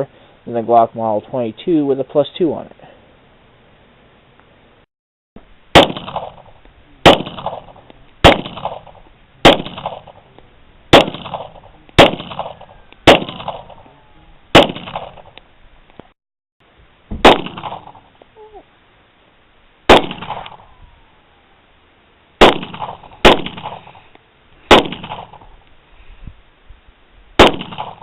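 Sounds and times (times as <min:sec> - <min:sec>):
pistol shots with echo: 0:05.8 - 0:10.3, 0:10.9 - 0:13.8, 0:14.5 - 0:15.4, 0:17.2 - 0:18.1, 0:19.9 - 0:20.7, 0:22.4 - 0:24.0, 0:24.7 - 0:25.5, 0:27.4 - 0:28.0.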